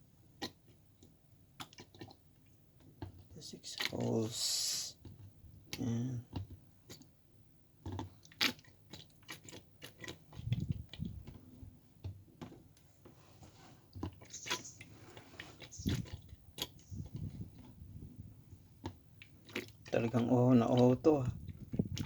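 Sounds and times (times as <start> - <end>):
small clicks taps and crackles: 0.4 - 4.0, 5.0 - 7.1, 18.8 - 22.0.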